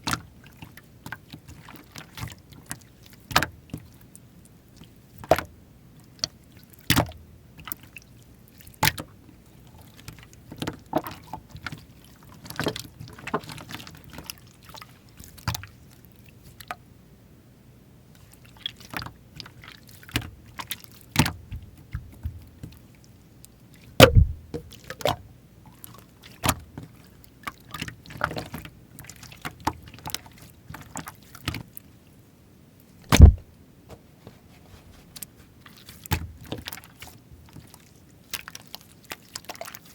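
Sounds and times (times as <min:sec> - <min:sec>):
slime squishing by hand: 0:23.8 - 0:25.2, 0:33.0 - 0:33.5, 0:34.3 - 0:39.9
loud low thuds: 0:24.0 - 0:24.6, 0:33.1 - 0:33.5.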